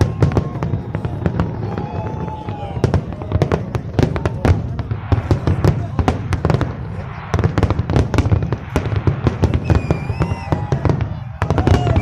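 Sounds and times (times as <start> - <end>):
fireworks crackling and popping: 0.0 - 12.0
fireworks whistling: 0.0 - 12.0.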